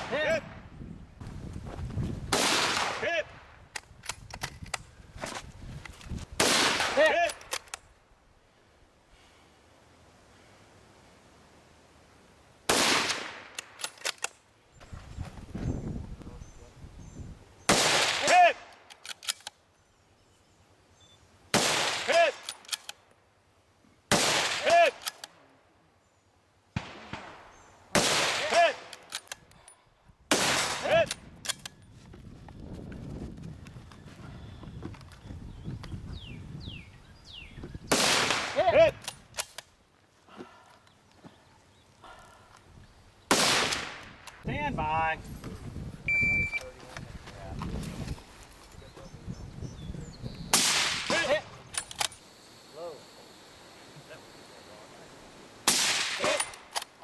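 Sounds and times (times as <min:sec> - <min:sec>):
rifle shot: 0:02.3 - 0:03.5, 0:06.4 - 0:07.2, 0:12.7 - 0:14.2, 0:17.7 - 0:18.5, 0:21.5 - 0:22.4, 0:24.1 - 0:25.1, 0:26.8 - 0:28.9, 0:30.3 - 0:31.1, 0:37.9 - 0:38.8, 0:43.3 - 0:44.3, 0:50.5 - 0:52.1, 0:55.6 - 0:56.9
sharp clicks: 0:07.2 - 0:07.9, 0:13.5 - 0:14.4, 0:18.7 - 0:19.6, 0:50.8 - 0:52.3.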